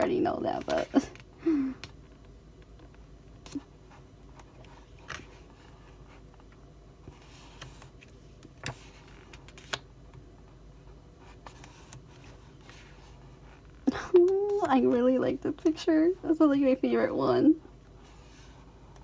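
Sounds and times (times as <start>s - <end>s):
faint room noise: 0.0s - 19.0s
photobook pages turning: 0.5s - 1.1s, 7.1s - 9.9s, 11.3s - 13.2s.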